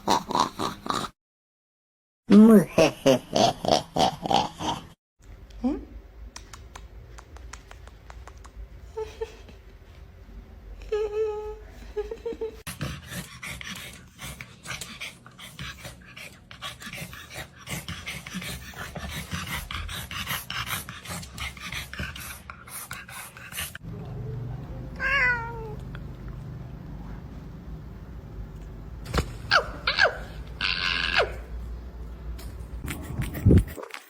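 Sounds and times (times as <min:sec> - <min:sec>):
scratchy clicking noise: 0:06.4 - 0:08.6
dog whining: 0:29.5 - 0:31.5.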